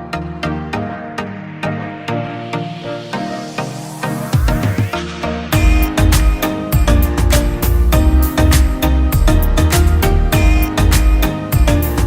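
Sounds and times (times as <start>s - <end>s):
music with drum beat: 4.3s - 12.0s.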